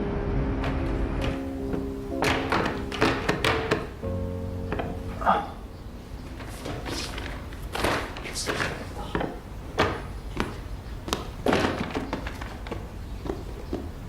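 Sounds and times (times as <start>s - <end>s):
low steady hum: 1.2s - 11.8s.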